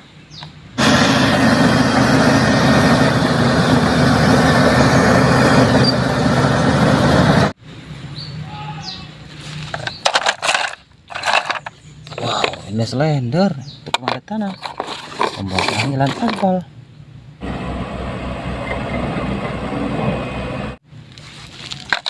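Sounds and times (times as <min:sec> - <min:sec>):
bulldozer engine rumble: 0:00.8 - 0:07.6, 0:17.4 - 0:22.0.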